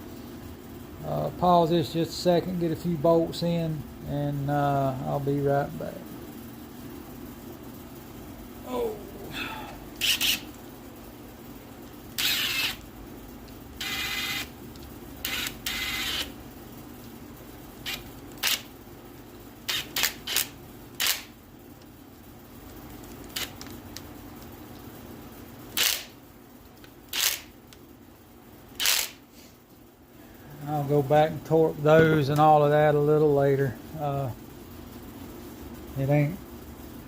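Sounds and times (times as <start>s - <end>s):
ratchet wrench clicking: 19.7s - 21.3s, 25.8s - 26.1s, 27.1s - 27.5s, 28.8s - 29.2s.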